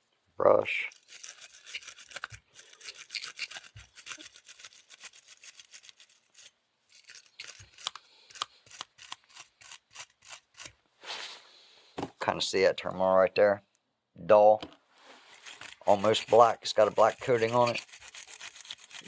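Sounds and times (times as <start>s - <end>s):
wire brush scrubbing battery post: 0.9s - 10.8s, 15.2s - 19.0s.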